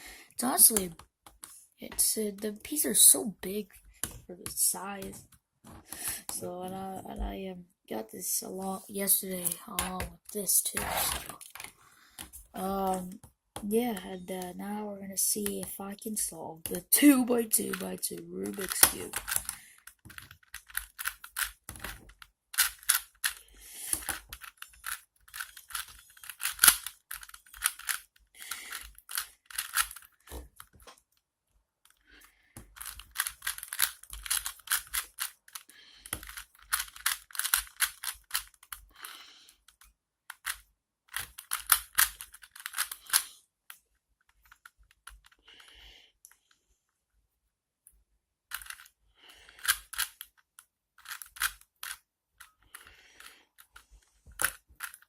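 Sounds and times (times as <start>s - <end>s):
plastic puzzle cube clicking: 16.7s - 31.0s, 31.9s - 45.8s, 48.5s - 55.0s.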